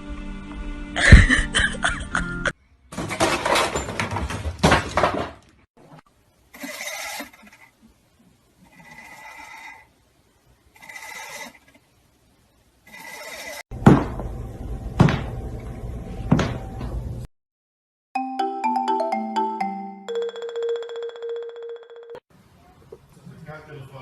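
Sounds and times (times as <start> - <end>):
knocks and rattles: 2.9 - 5.6
animal calling: 6.5 - 7.8, 8.6 - 10.0, 10.7 - 11.9, 12.8 - 13.6.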